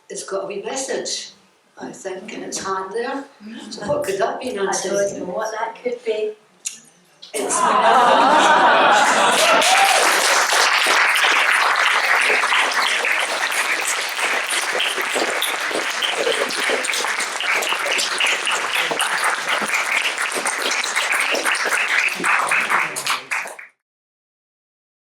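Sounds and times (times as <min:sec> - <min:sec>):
audience applauding: 0:08.0 - 0:23.8.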